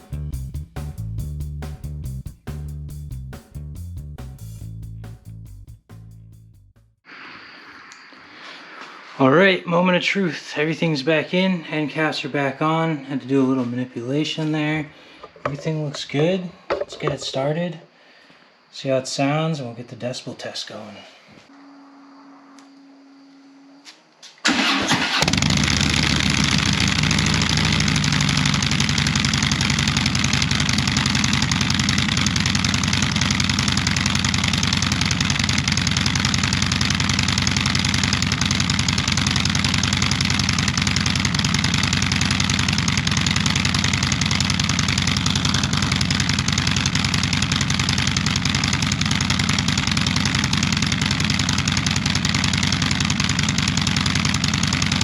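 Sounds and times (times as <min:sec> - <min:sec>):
motorcycle engine idling: 0:24.5 - 0:55.0.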